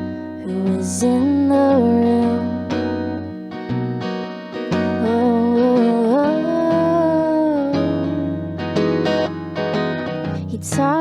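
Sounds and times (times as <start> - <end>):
acoustic guitar strumming: 0.0 - 11.0.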